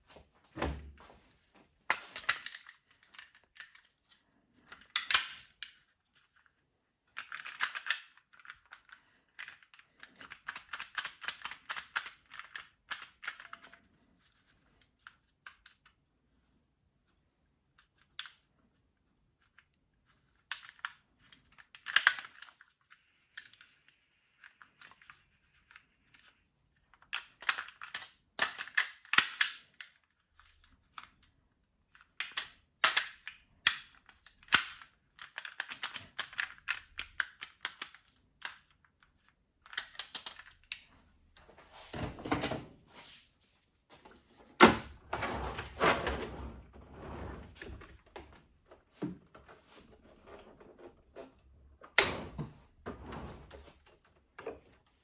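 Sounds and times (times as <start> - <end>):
clicks knocks and scraping of parts: 1.9 - 6.3, 32.0 - 43.1, 43.9 - 55.0.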